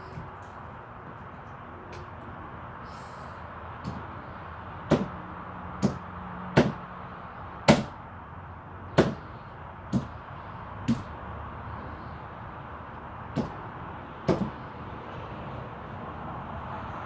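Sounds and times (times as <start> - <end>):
sharp knocks: 3.8 - 4.1, 4.9 - 5.2, 5.8 - 6.0, 6.6 - 6.8, 7.7 - 8.0, 9.0 - 9.3, 10.9 - 11.1, 13.4 - 13.6, 14.3 - 14.6.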